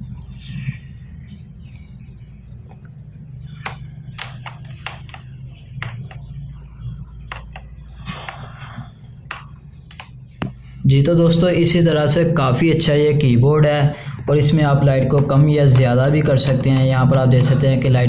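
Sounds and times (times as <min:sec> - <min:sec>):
steady low hum: 0:00.0 - 0:18.0
keyboard key clicks: 0:03.6 - 0:06.2, 0:07.3 - 0:07.6, 0:09.3 - 0:10.1.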